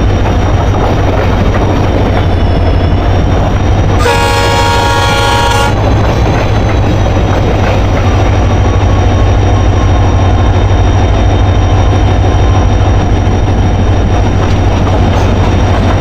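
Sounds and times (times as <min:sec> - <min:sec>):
moving train rumble: 0:00.0 - 0:16.0
train horn: 0:03.9 - 0:06.0.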